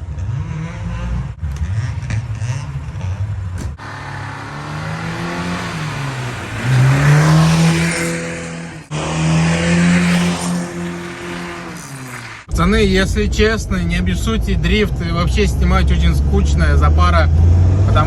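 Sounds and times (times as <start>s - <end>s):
car engine revving hard: 0.0s - 12.5s, 15.2s - 18.0s
rushing noise: 3.8s - 16.0s.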